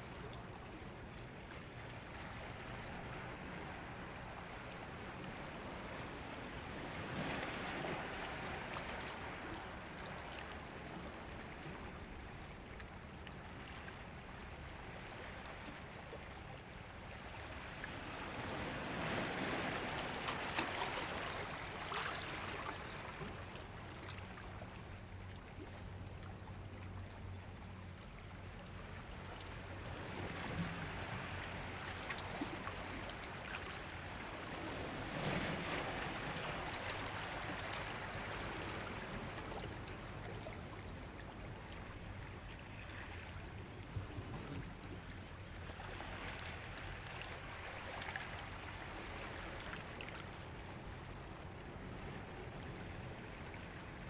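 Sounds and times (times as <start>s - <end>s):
ocean waves on shore: 0.0s - 12.2s, 17.0s - 25.1s, 28.7s - 45.2s.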